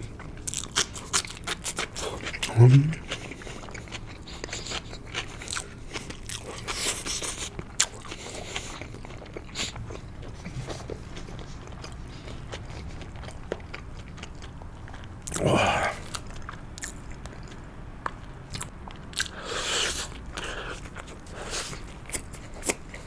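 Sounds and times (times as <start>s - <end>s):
chewing with wet mouth clicks: 0.0s - 23.0s.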